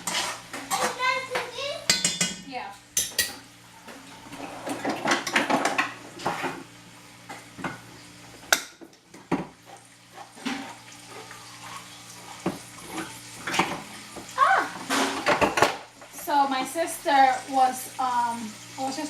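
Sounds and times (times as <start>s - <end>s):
utensil scraping cooking pot: 0.0s - 2.3s.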